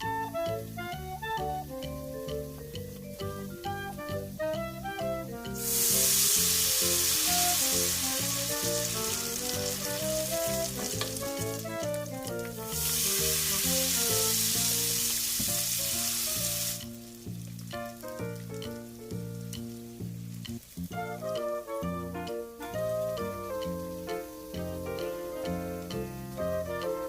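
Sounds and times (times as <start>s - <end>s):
background music: 0.0s - 27.0s
food sizzling in hot oil: 5.4s - 27.0s.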